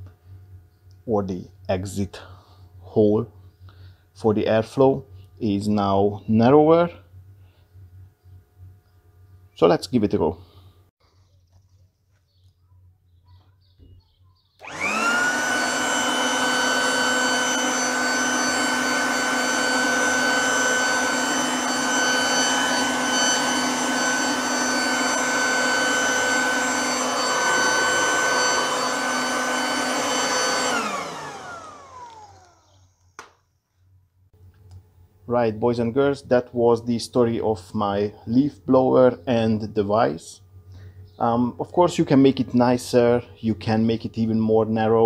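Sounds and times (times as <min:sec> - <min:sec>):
leaf blower motor whine: 0:14.6 - 0:33.4.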